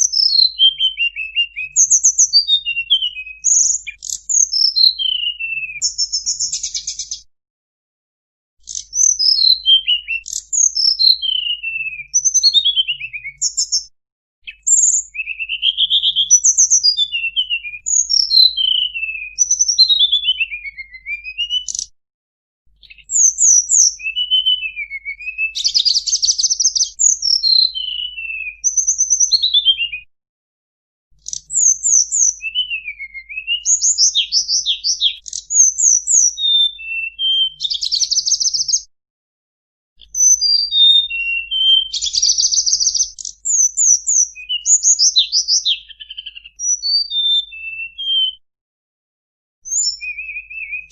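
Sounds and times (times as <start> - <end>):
songbird singing whistled trills: 0.0 - 7.3, 8.6 - 21.9, 22.8 - 30.1, 31.2 - 38.9, 40.0 - 48.4, 49.6 - 50.9.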